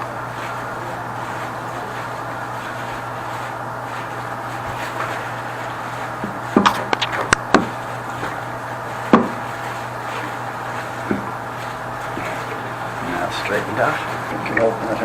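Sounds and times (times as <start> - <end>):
wood knocking: 9.1 - 9.4.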